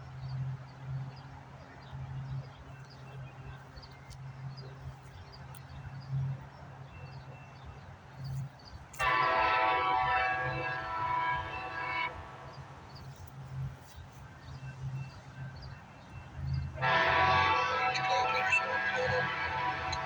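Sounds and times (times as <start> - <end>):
diesel locomotive engine hum: 0.0 - 20.0
train horn chord: 9.0 - 13.7, 16.8 - 20.0.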